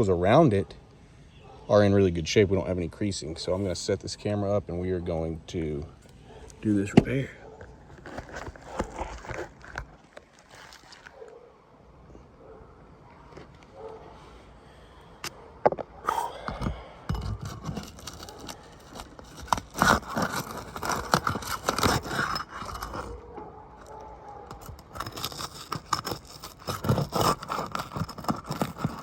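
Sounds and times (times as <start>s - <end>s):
tool scraping under shingles: 6.0s - 11.4s, 15.2s - 29.0s
shingles crunching and clicking: 6.4s - 11.4s, 15.2s - 29.0s.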